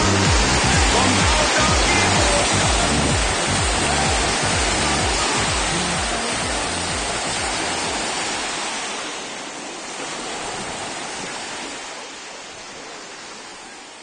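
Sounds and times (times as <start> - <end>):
low music notes: 0.0 - 7.8
steady rushing noise: 0.0 - 14.0.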